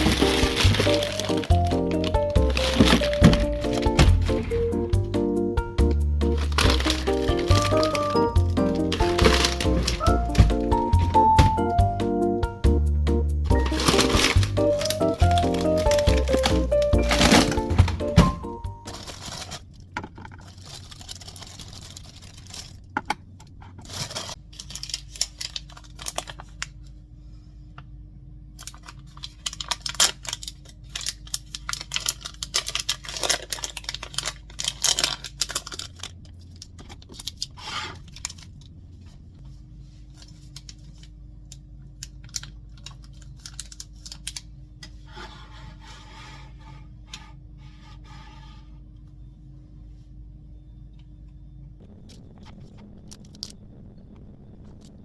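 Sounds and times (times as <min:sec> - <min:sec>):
objects being handled: 0:00.0 - 0:05.0, 0:05.9 - 0:12.0, 0:13.5 - 0:22.8
steady low hum: 0:00.0 - 0:25.0, 0:35.2 - 0:55.0.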